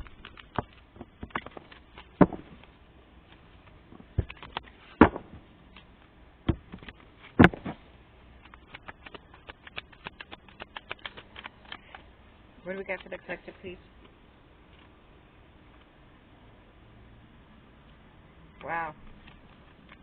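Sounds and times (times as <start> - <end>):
loud knocks: 2.2 - 2.6, 5.0 - 5.4
cards tapping and clicking: 3.3 - 5.9, 8.4 - 12.1.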